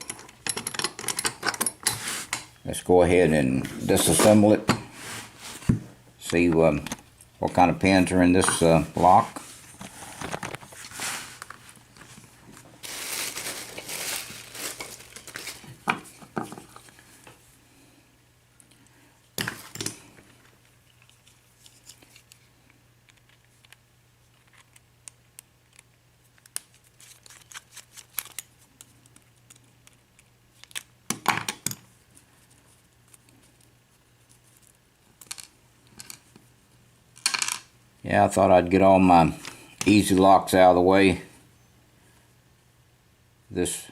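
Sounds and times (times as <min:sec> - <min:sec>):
scraping and rustling: 0:01.8 - 0:02.5, 0:03.4 - 0:05.9, 0:08.4 - 0:17.2.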